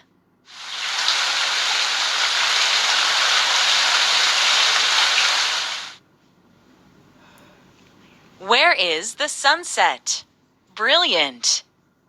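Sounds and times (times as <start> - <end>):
rain falling: 0.5 - 6.0.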